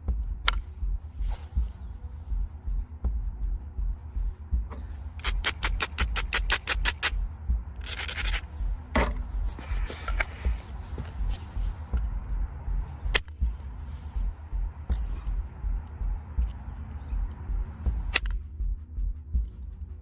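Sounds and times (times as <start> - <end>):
stone knapping ringing ticks: 5.2 - 7.2.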